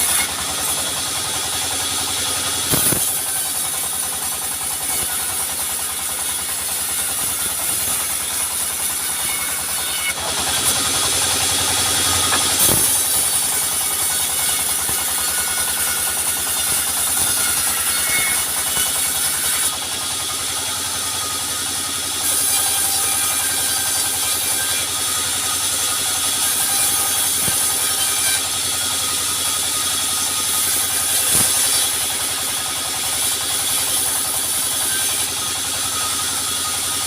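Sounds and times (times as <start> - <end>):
sawmill machinery drone: 0.0 - 37.0.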